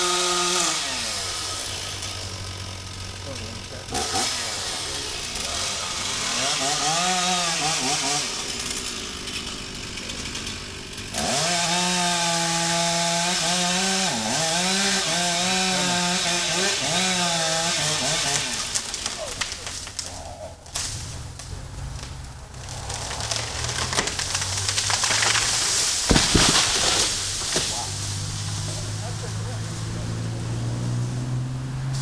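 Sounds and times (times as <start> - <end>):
chainsaw cutting wood: 0.0 - 20.1, 22.0 - 32.0.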